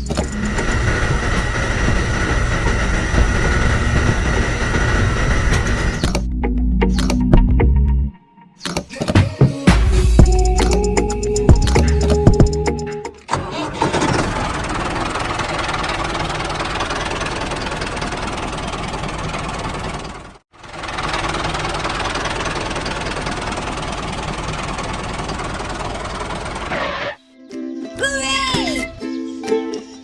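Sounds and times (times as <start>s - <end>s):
small tractor engine running: 0.0s - 6.2s, 10.2s - 27.1s.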